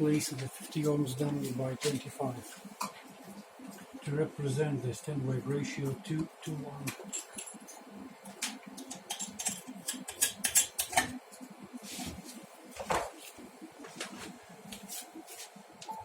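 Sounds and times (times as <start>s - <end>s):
connectors clicking and clattering: 8.3s - 11.2s.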